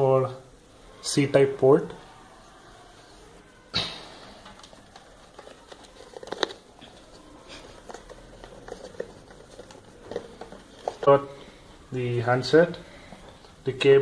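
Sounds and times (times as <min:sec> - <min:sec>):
packaging clicks and rustles: 0:04.2 - 0:11.9.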